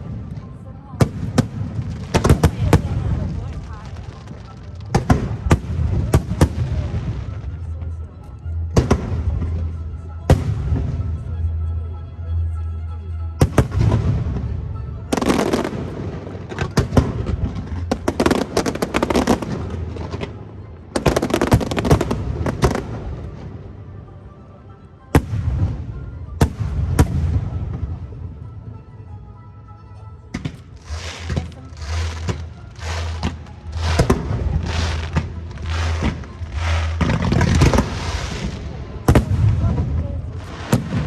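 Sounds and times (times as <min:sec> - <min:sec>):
fireworks crackling: 0:00.0 - 0:07.8, 0:15.1 - 0:20.4, 0:21.0 - 0:23.3, 0:30.4 - 0:41.0
fireworks bangs: 0:01.0 - 0:07.4, 0:30.4 - 0:41.0.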